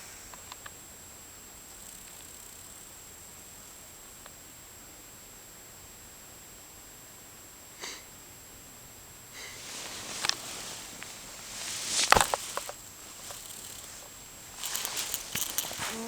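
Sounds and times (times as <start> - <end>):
person snorting in sleep: 7.8 - 8.1, 9.4 - 10.9, 15.6 - 16.0
rustling and knocking: 9.6 - 16.0.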